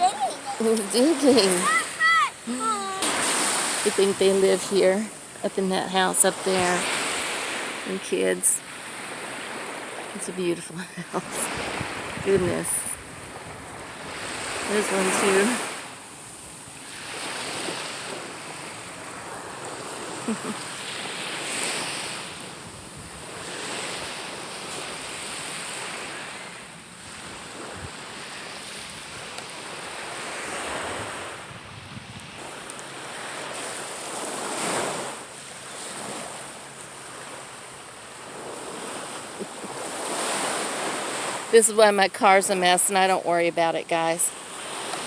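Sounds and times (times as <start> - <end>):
small waves breaking on beach: 0.0 - 45.0
wind on microphone: 11.1 - 15.6, 27.0 - 29.4, 30.5 - 32.6.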